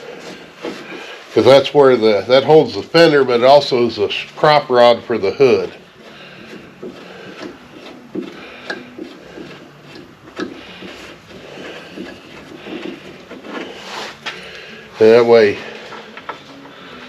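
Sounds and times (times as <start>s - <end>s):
tap scraping in metal threads: 6.5s - 11.4s.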